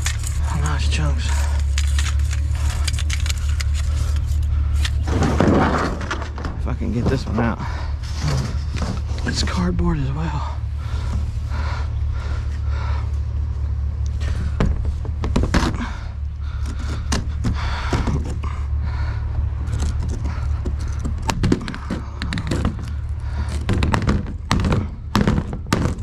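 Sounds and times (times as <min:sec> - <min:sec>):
rummaging knocks and scrapes: 0:00.0 - 0:09.6, 0:14.2 - 0:18.6, 0:19.5 - 0:26.0
steady low hum: 0:00.0 - 0:26.0.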